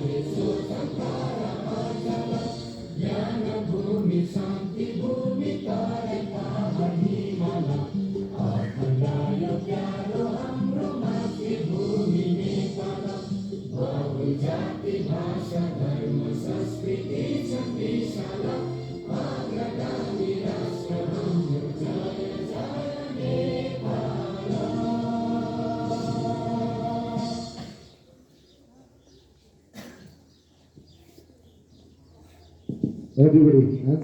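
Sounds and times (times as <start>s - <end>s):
group singing with music: 0.0s - 28.1s.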